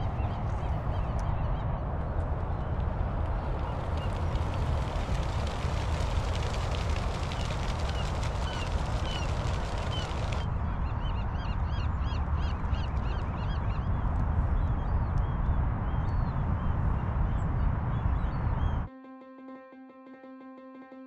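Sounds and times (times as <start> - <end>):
steady low rumble: 0.0 - 18.9
birds calling: 3.4 - 13.9.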